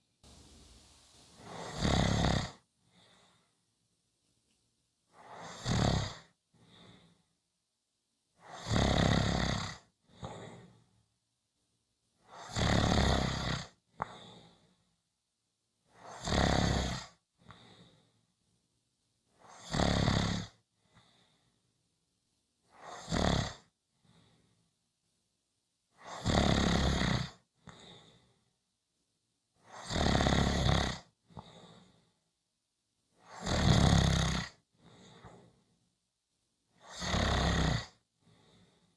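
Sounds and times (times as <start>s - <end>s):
loud snoring: 1.4s - 2.6s, 5.2s - 6.3s, 8.5s - 9.9s, 12.3s - 13.8s, 16.1s - 17.2s, 19.5s - 20.6s, 22.8s - 23.7s, 26.0s - 27.4s, 29.7s - 31.1s, 33.3s - 34.6s, 36.8s - 38.0s
soft breathing: 2.8s - 3.6s, 38.2s - 38.9s.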